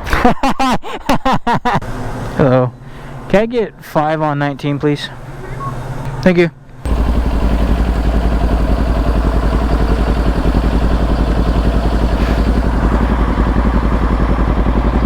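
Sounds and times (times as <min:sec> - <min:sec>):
motorcycle engine running: 0:06.9 - 0:15.0.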